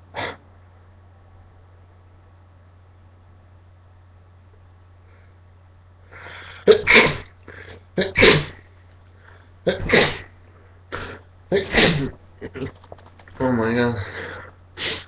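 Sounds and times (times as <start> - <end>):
man sneezing: 6.6 - 7.3, 8.0 - 8.6, 9.7 - 10.3, 10.9 - 12.7.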